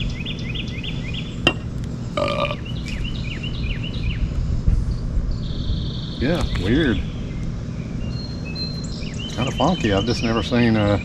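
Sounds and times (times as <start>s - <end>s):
bird chirping: 0.0s - 11.0s
low outdoor rumble: 0.0s - 11.0s
low grunt-like sound: 2.2s - 2.6s.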